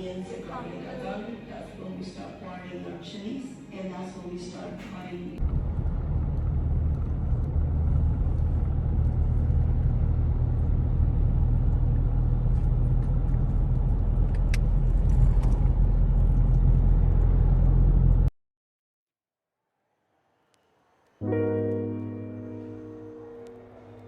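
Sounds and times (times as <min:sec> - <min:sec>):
road vehicle rumble: 0:05.0 - 0:18.3.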